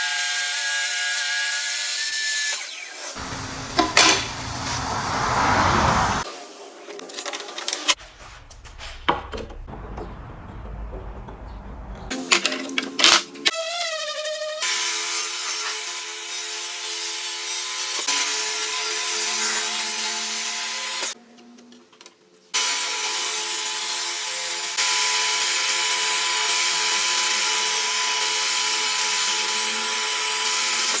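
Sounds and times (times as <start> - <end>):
power tool cutting wood: 0.0 - 6.4, 12.1 - 21.2, 22.6 - 31.0.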